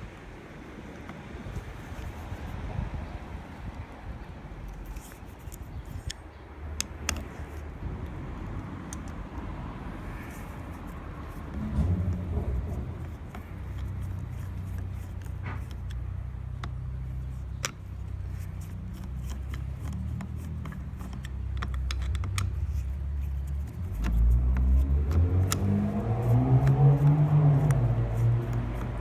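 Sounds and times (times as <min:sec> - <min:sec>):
car engine idling and revving: 0:07.8 - 0:29.0.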